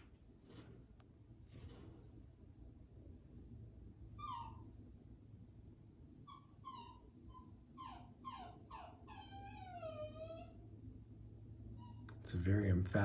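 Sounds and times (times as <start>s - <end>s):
puppy whimpering: 1.8s - 2.3s, 4.1s - 10.7s, 11.5s - 12.4s.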